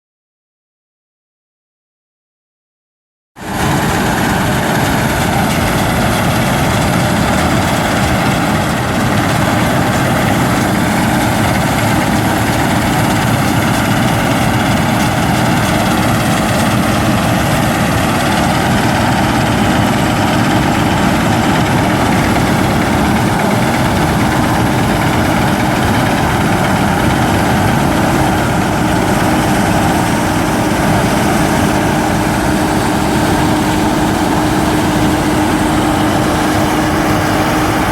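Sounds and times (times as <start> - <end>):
combine harvester running: 3.4 - 37.9.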